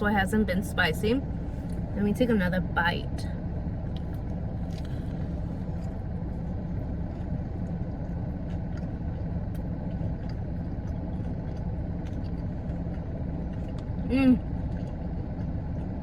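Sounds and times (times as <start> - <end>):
low background rumble: 0.0 - 16.0
person chewing: 3.9 - 16.0.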